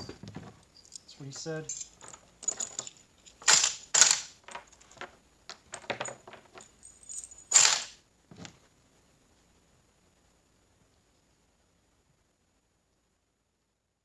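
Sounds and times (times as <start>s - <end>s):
metal parts clinking: 0.0s - 8.0s.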